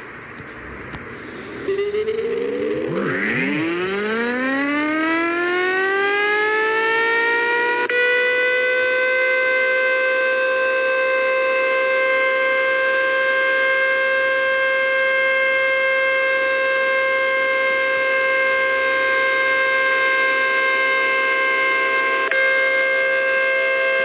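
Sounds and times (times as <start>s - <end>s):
tornado warning siren steady tone: 0.0s - 24.0s.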